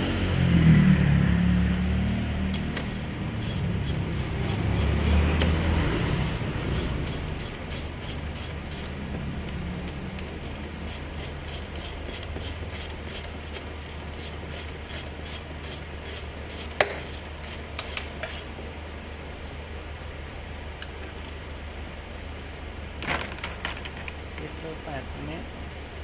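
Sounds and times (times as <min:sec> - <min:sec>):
steady low hum: 0:00.0 - 0:26.0
ratchet wrench clicking: 0:02.5 - 0:05.6, 0:06.2 - 0:09.0, 0:10.4 - 0:18.5.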